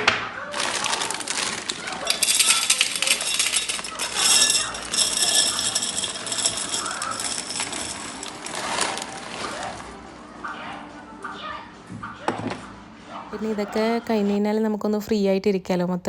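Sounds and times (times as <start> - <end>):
dry spaghetti rattling into container: 0.5 - 10.0.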